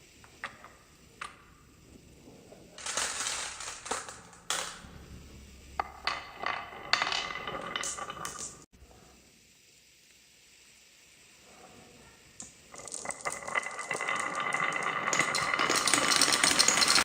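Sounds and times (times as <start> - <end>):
marbles rolling down a track: 2.8 - 4.9, 5.8 - 8.7, 12.4 - 17.0.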